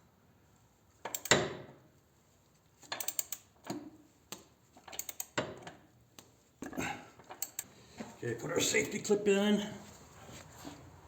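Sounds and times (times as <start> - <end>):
torque wrench click: 3.0 - 3.5, 4.9 - 5.4
wrench ratchet clicks: 3.0 - 3.5, 4.9 - 5.4.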